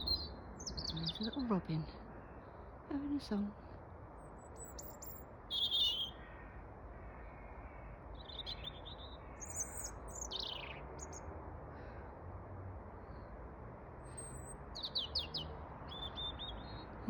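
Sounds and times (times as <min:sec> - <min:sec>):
robin singing: 0:00.0 - 0:03.6, 0:04.2 - 0:06.5, 0:08.1 - 0:11.2, 0:14.0 - 0:17.0.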